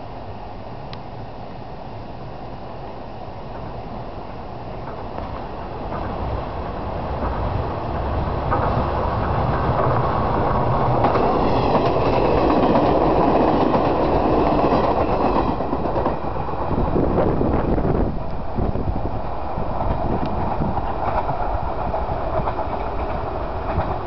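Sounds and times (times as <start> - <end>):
faint high whine: 0.0 - 7.1
train rumbling past: 0.0 - 24.0
wheels clicking over rail joints: 4.8 - 16.8, 19.8 - 24.0.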